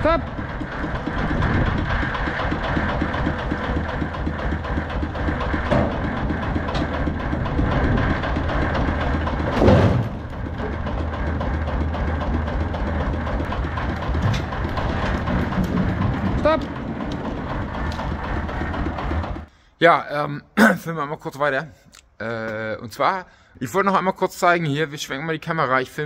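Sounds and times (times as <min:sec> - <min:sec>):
car engine idling: 0:00.0 - 0:19.5.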